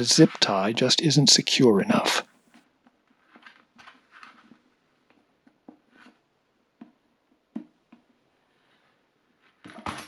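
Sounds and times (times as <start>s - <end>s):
soft rustles: 3.0s - 4.8s.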